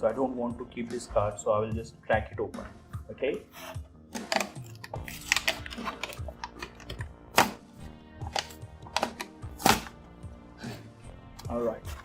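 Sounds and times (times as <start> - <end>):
soft background music: 0.0 - 12.0
plastic packaging cracking: 4.2 - 7.5.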